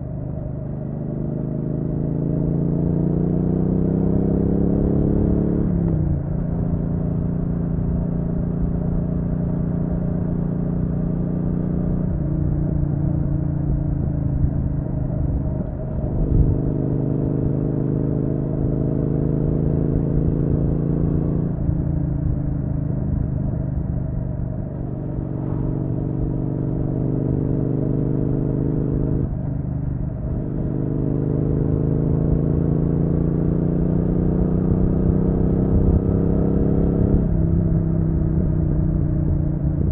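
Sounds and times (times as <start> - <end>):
low wind rumble: 5.1 - 27.9, 29.2 - 32.7, 37.0 - 39.9.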